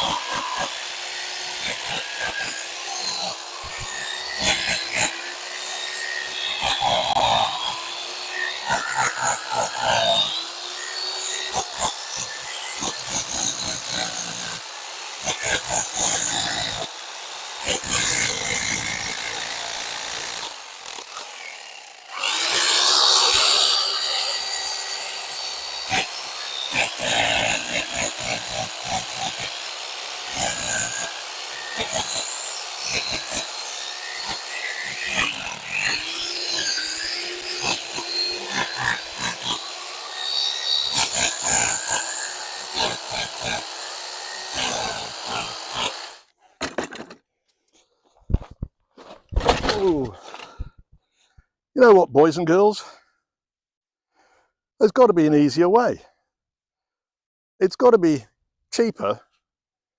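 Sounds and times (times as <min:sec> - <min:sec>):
power tool motor under load: 0:00.0 - 0:46.3.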